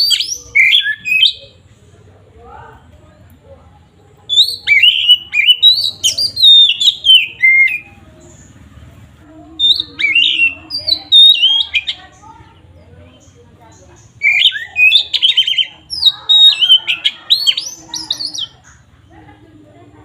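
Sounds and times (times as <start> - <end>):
bird singing whistled notes: 0.0 - 1.5, 4.3 - 8.0, 9.6 - 12.0, 14.1 - 18.6.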